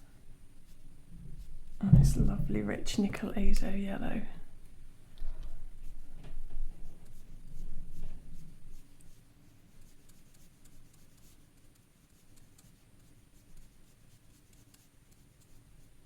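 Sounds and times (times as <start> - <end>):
brush scratching on paper: 0.6 - 3.7, 5.7 - 6.1, 6.7 - 16.0.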